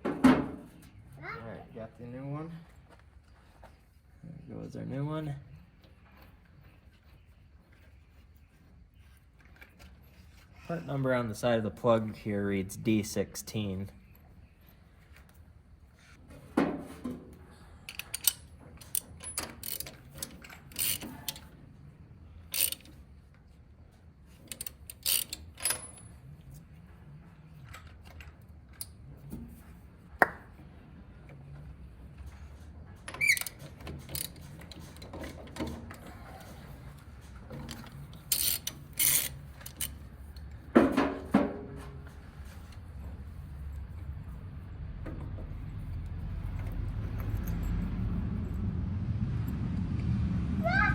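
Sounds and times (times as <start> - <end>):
ratchet wrench clicking: 17.9 - 21.4, 22.5 - 23.0, 24.5 - 26.0, 38.3 - 40.0.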